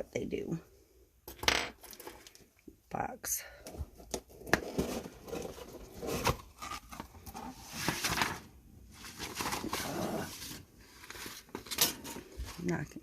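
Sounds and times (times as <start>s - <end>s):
packaging rustling and crinkling: 4.7s - 13.0s.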